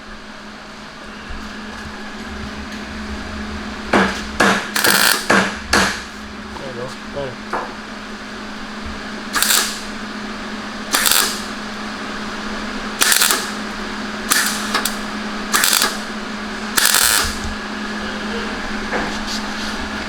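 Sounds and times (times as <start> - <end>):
welder low hum: 0.0 - 20.0
welder crackling bursts: 4.0 - 6.0, 9.2 - 17.6.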